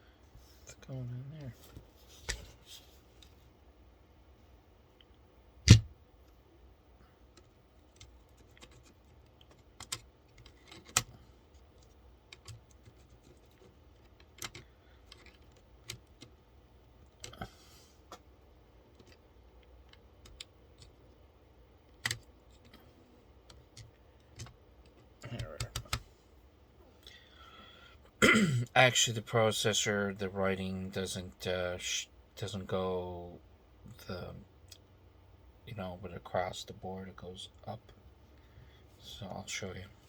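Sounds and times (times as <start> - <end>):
clicks and taps of computer parts: 7.3 - 11.2.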